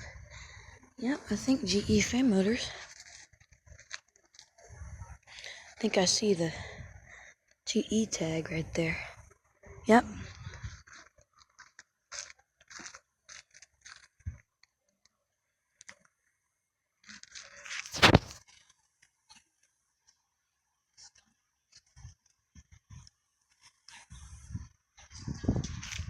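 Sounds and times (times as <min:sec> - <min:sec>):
crunching and scraping: 0:02.1 - 0:05.8, 0:10.3 - 0:14.7, 0:17.0 - 0:19.4.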